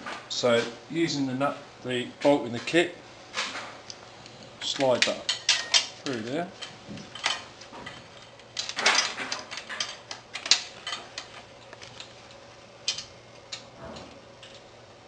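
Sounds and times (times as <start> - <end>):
metal parts clinking and rattling: 4.6 - 12.2.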